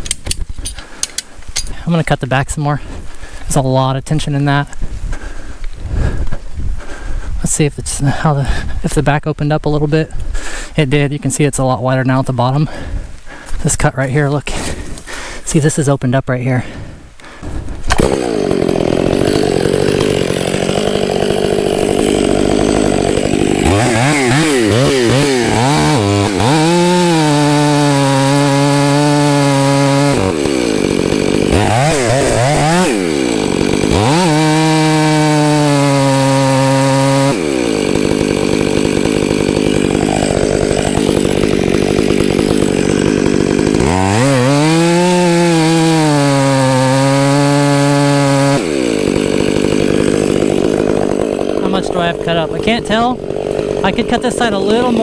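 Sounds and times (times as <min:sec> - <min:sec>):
chainsaw cutting tree: 0:17.4 - 0:55.0.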